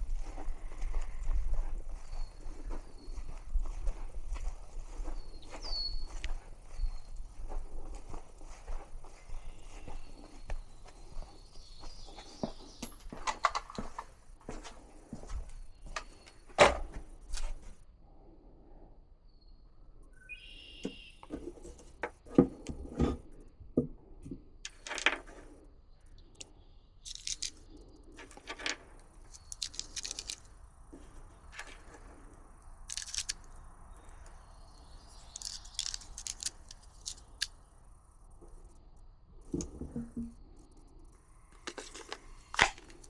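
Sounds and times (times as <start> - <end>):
bird chirp: 1.8 - 4.0, 4.8 - 7.8, 9.1 - 13.9, 19.3 - 21.3, 31.3 - 39.1
clicks and metallic rattles: 24.7 - 25.3, 27.1 - 27.6, 28.2 - 30.5, 32.9 - 33.4, 35.3 - 37.5.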